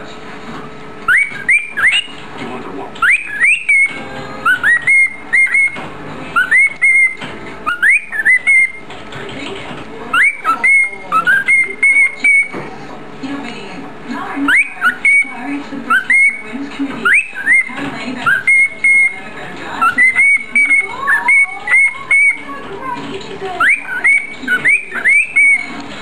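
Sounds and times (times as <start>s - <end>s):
cockatiel whistling: 1.0s - 2.2s, 3.0s - 8.8s, 10.1s - 12.6s, 14.4s - 19.2s, 19.8s - 22.6s, 23.6s - 25.8s.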